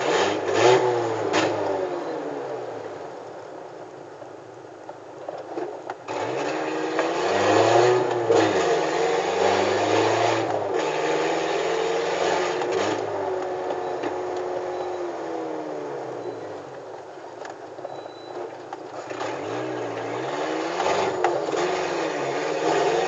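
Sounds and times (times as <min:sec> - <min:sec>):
car engine revving: 0:00.0 - 0:03.0, 0:06.1 - 0:16.6, 0:19.0 - 0:23.0.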